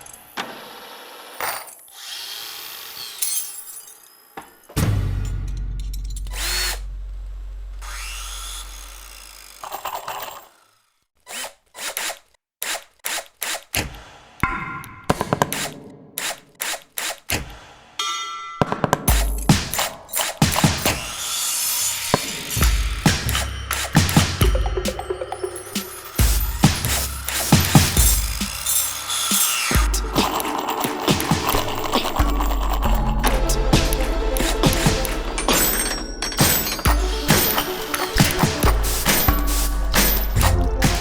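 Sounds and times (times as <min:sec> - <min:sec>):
drill-like whirring and scraping: 0:00.0 - 0:04.7, 0:06.3 - 0:06.9, 0:07.8 - 0:14.3, 0:15.5 - 0:17.8, 0:20.2 - 0:24.3, 0:25.8 - 0:41.0
music: 0:04.8 - 0:06.1, 0:18.0 - 0:21.2, 0:22.5 - 0:41.0.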